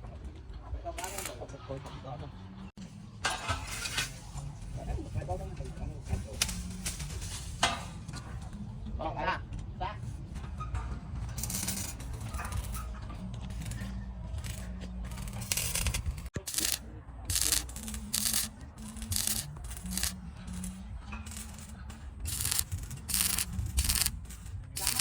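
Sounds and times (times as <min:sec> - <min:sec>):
rough scraping strokes: 0:11.3 - 0:25.0.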